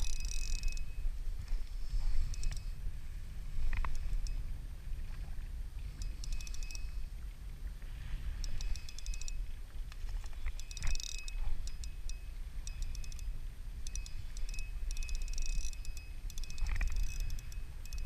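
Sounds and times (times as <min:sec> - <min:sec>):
fast mechanical clicking: 0:00.0 - 0:00.8, 0:08.5 - 0:09.4, 0:10.6 - 0:13.2, 0:13.8 - 0:18.0
wind buffeting microphone: 0:00.0 - 0:18.0.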